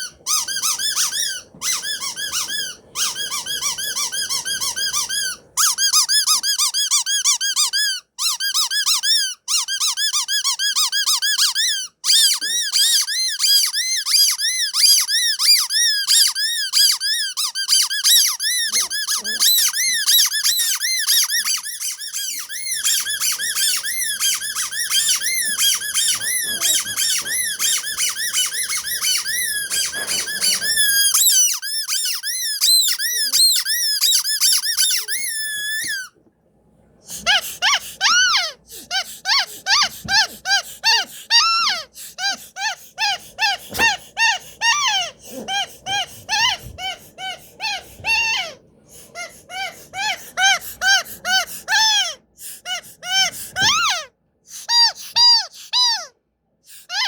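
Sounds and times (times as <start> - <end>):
high-pitched squeaks: 0.0 - 6.4, 12.1 - 36.2, 54.6 - 56.1.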